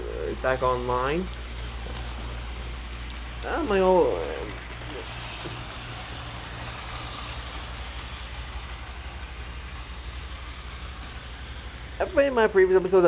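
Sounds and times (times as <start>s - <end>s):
electric motor hum: 0.0s - 13.0s
wheel and rail noise: 0.0s - 13.0s.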